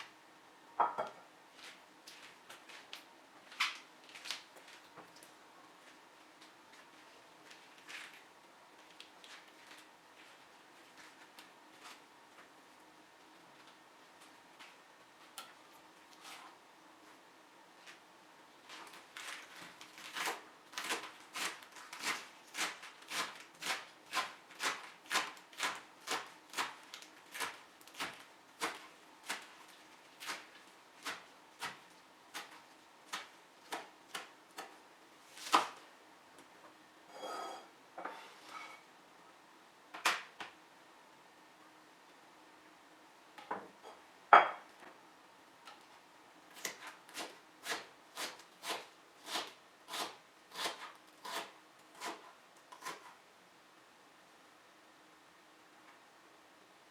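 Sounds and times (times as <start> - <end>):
scrape: 16.2 - 16.6, 37.1 - 38.9.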